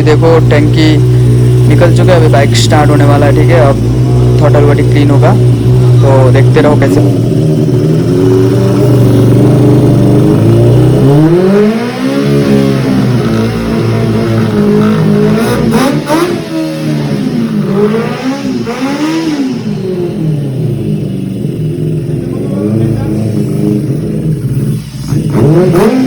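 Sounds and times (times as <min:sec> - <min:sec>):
motorcycle engine revving: 0:00.0 - 0:26.0.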